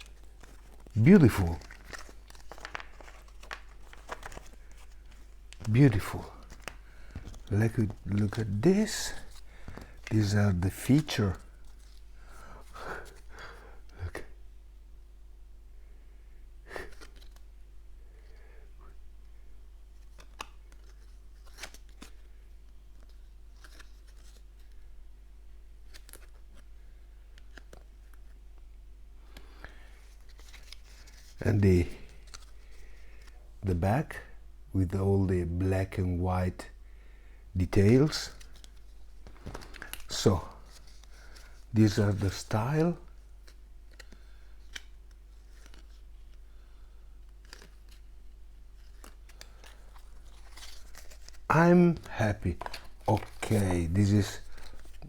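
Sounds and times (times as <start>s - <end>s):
cards clicking and sliding: 0.0s - 12.1s, 20.0s - 22.3s, 23.0s - 24.9s, 43.4s - 46.4s, 47.3s - 48.1s, 48.8s - 55.0s
low electrical hum: 0.0s - 55.0s.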